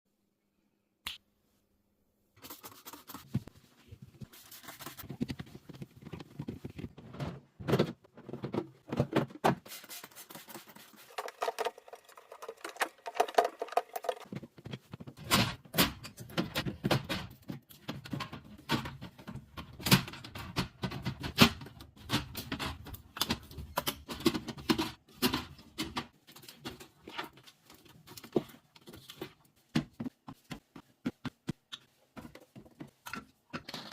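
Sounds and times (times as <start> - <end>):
containers clattering in a fridge: 6.4 - 9.7, 10.9 - 29.3.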